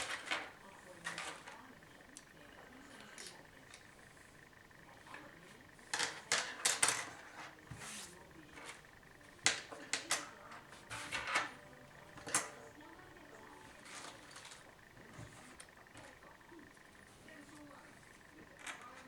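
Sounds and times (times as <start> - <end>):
small parts clicking and rattling: 0.0 - 7.8.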